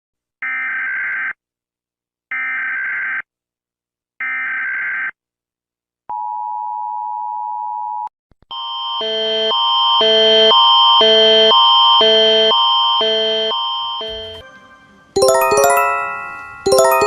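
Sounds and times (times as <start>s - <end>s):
alarm tone: 10.0s - 17.0s
steady attention tone: 14.0s - 17.0s.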